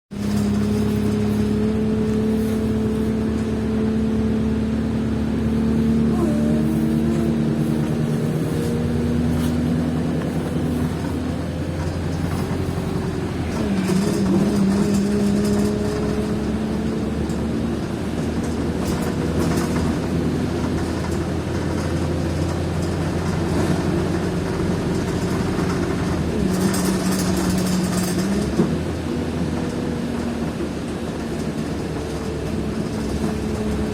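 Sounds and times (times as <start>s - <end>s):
bus droning hum: 0.1s - 33.9s.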